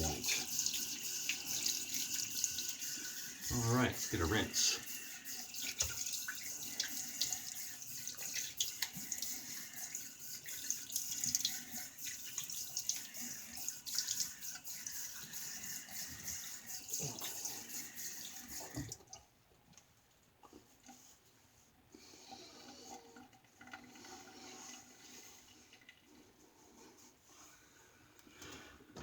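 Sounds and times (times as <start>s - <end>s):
tap water running into sink: 0.0s - 19.2s.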